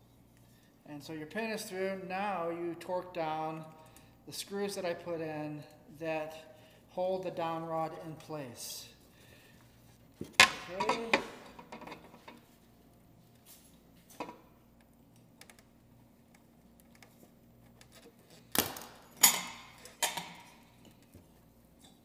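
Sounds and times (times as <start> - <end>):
metal tools clinking: 19.1 - 20.6.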